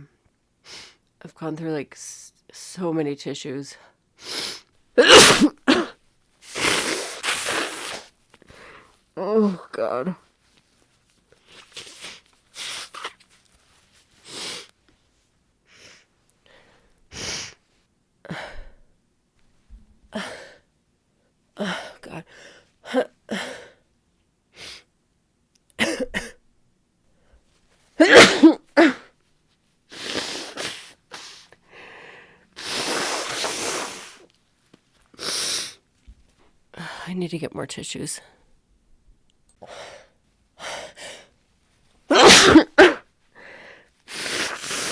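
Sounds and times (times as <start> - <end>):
woman blowing her nose: 4.2 - 8.2, 11.4 - 13.2, 14.2 - 14.7, 17.1 - 17.6, 28.0 - 29.1, 29.9 - 34.3, 35.2 - 35.8, 42.1 - 43.1, 44.1 - 44.9
woman sniffling: 4.2 - 9.7, 29.9 - 34.3, 42.1 - 44.9
woman sneezing: 5.0 - 8.1, 25.8 - 26.4, 28.0 - 29.1, 32.6 - 34.2, 42.1 - 43.0
short catching breaths: 42.2 - 44.9.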